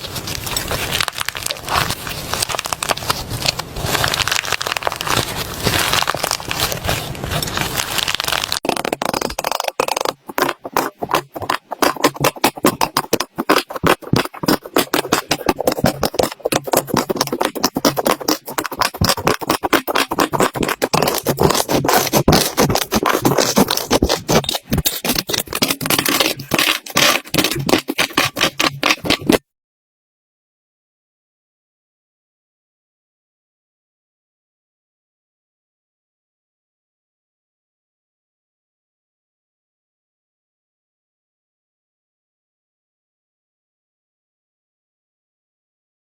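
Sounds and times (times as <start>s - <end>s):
slime crackling and popping: 0.0s - 29.4s.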